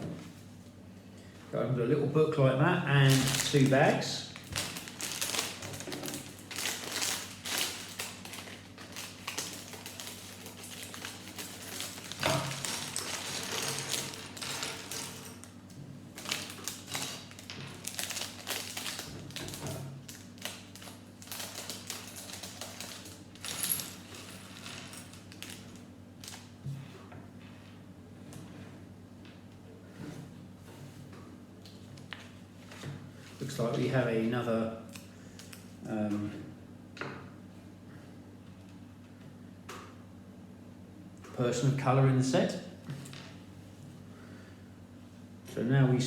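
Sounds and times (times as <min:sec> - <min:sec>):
plastic bags crinkling: 0:03.0 - 0:26.5.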